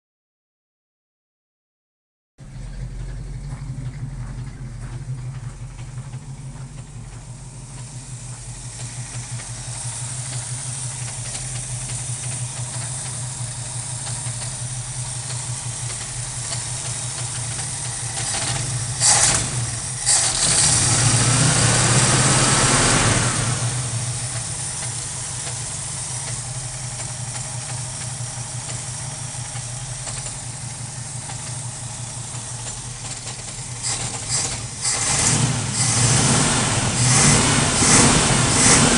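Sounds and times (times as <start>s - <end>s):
car engine misfiring: 2.4s - 38.9s
engine revving: 2.4s - 38.9s.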